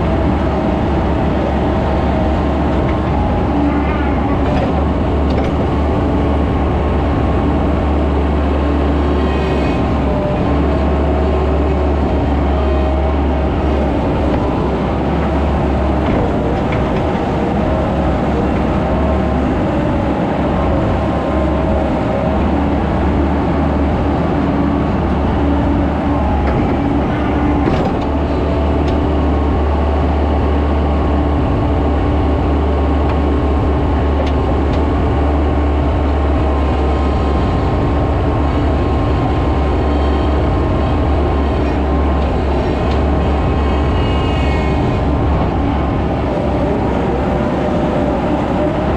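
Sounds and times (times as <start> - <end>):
skid steer engine droning: 0.0 - 48.9.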